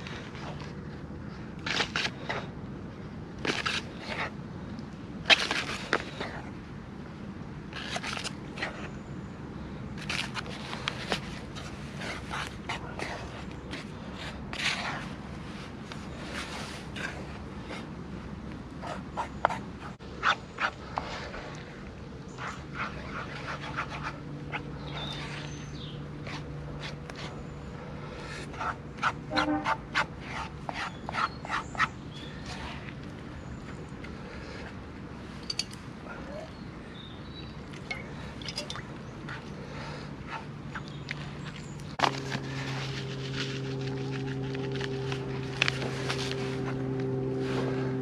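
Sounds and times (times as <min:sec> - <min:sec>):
clicks scrapes and rustling: 0:01.6 - 0:02.5, 0:03.4 - 0:04.3, 0:05.3 - 0:06.4, 0:07.7 - 0:08.9, 0:10.0 - 0:17.9, 0:40.3 - 0:47.7.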